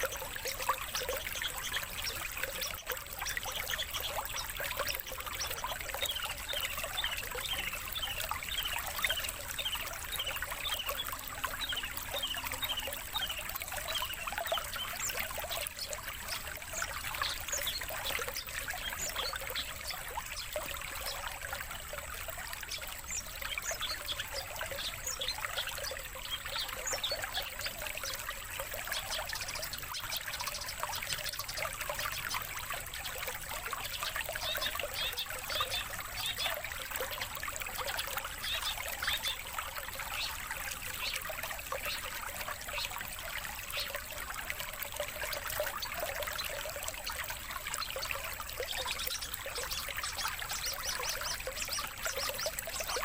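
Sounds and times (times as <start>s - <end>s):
songbirds chirping: 0.0s - 53.0s.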